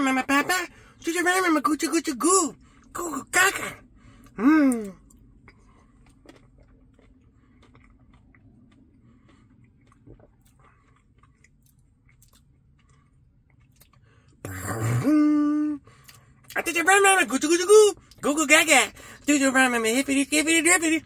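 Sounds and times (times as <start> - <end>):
chewing and wet mouth clicks: 4.2 - 14.5.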